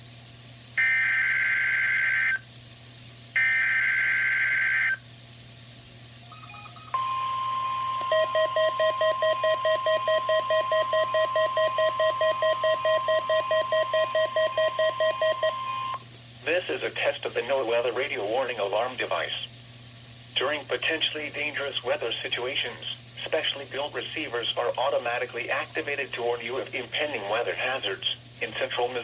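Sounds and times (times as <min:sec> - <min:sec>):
steady alarm tone: 0:06.2 - 0:16.0
pulsing beep: 0:06.3 - 0:16.0
warbling data bursts: 0:06.3 - 0:16.0.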